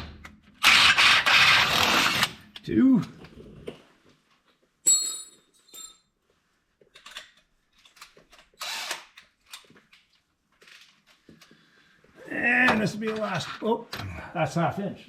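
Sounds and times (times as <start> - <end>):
metal tool clink: 4.8 - 6.1.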